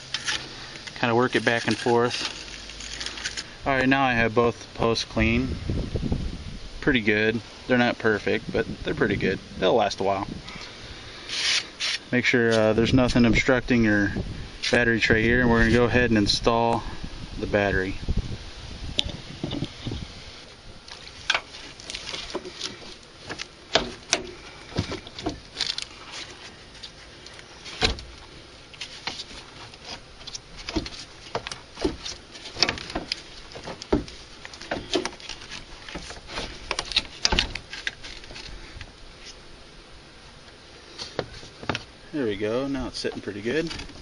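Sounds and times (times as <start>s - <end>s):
battery case knocking and scraping: 28.9s - 38.5s, 41.0s - 41.9s.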